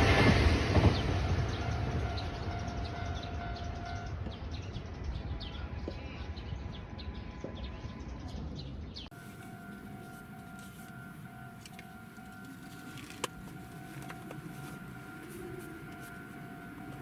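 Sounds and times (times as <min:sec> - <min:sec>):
passing train rumble: 0:00.0 - 0:17.0.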